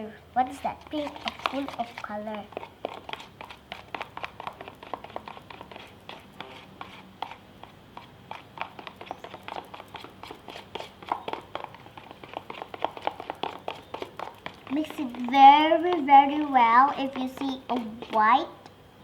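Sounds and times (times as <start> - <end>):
spoon stirring slime in a bowl: 0.4 - 18.4.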